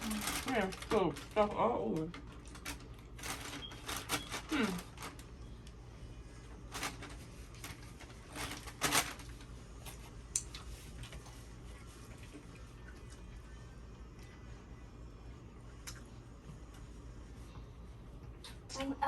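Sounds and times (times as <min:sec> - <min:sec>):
food rustles and clicks: 0:00.0 - 0:05.4, 0:06.6 - 0:13.3
low hum: 0:00.0 - 0:19.0.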